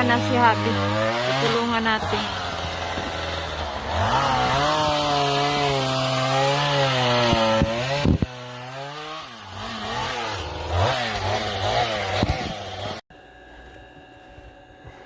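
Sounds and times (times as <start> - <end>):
chainsaw cutting wood: 0.0 - 13.0.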